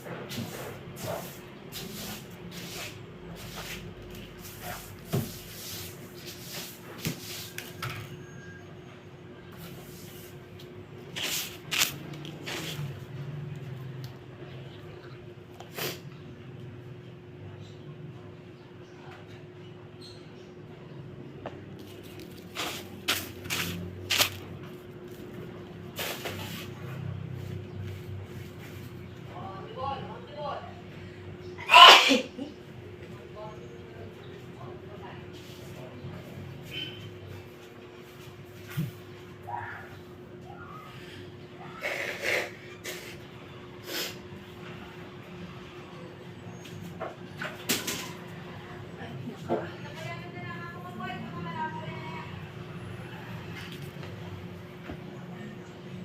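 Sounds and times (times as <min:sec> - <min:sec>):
person sneezing: 0:31.6 - 0:32.4.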